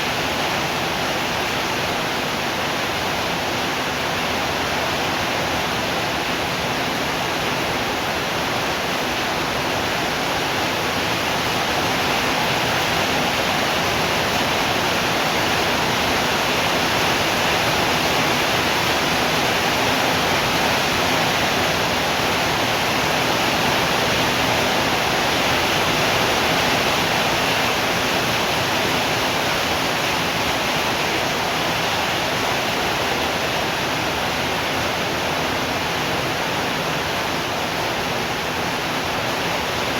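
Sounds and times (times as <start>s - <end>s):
heavy rain: 0.0s - 39.9s.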